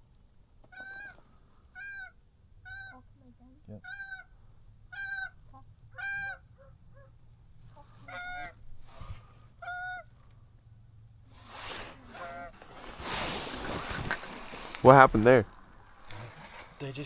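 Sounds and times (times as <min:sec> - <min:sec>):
goose honking: 0:01.8 - 0:03.1, 0:03.7 - 0:04.3, 0:04.9 - 0:08.6, 0:09.6 - 0:10.1, 0:12.0 - 0:12.7
rustling hiss: 0:07.5 - 0:09.6, 0:11.2 - 0:17.0.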